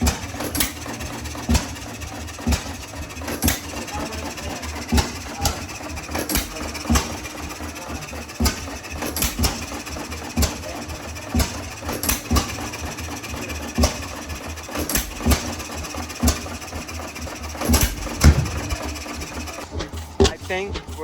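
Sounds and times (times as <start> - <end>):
engine chugging: 0.0 - 21.0
engine exhaust pops: 0.0 - 21.0.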